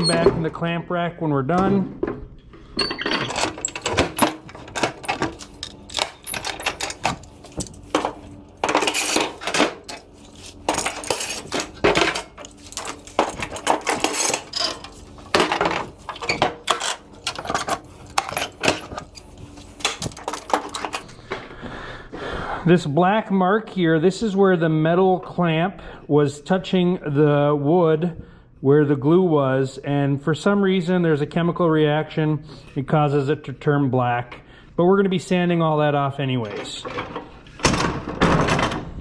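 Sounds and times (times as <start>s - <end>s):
metal clamps clanking and rattling: 2.8s - 21.0s.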